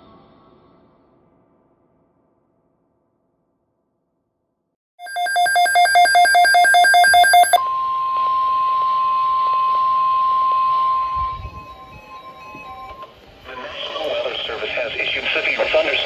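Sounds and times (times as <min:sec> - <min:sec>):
rapid electronic alarm beeping: 0:05.0 - 0:07.6
steady alarm tone: 0:05.0 - 0:07.6.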